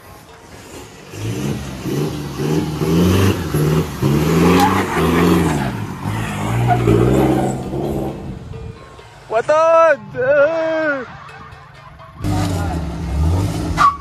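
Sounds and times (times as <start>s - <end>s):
off-road vehicle engine revving: 0.6s - 8.5s, 12.2s - 14.0s.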